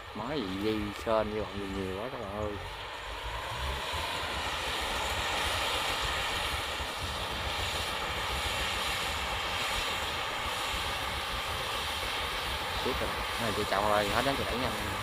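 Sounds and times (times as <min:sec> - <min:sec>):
combine harvester engine rumble: 0:00.0 - 0:15.0.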